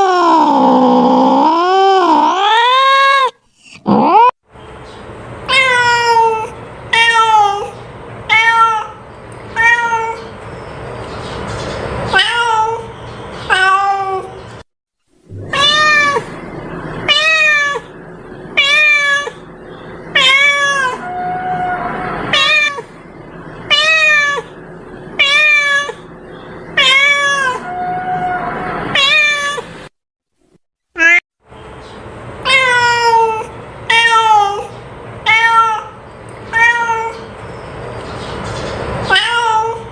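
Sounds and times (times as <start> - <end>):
cat meowing: 0.0 - 4.3, 5.5 - 10.3, 12.1 - 12.9, 13.5 - 14.4, 15.4 - 16.4, 17.1 - 17.9, 18.6 - 19.5, 20.1 - 22.9, 23.7 - 24.5, 25.2 - 26.1, 26.8 - 29.7, 31.0 - 31.2, 32.4 - 37.3, 39.1 - 39.9.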